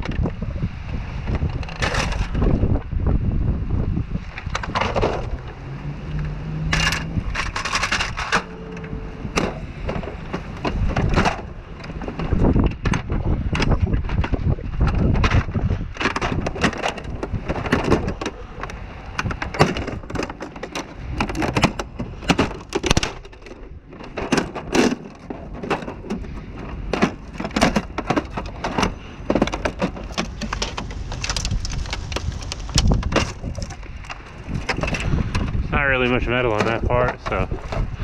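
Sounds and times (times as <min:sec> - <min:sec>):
plastic cracking and snapping: 0:27.0 - 0:33.8.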